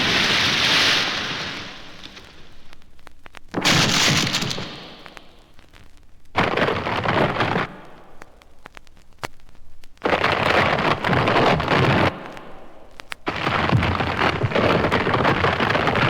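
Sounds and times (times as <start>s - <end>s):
thunder crashes: 0.0s - 2.3s, 3.6s - 5.2s
rain-like hiss: 0.0s - 16.0s
vinyl record crackle: 0.0s - 16.0s.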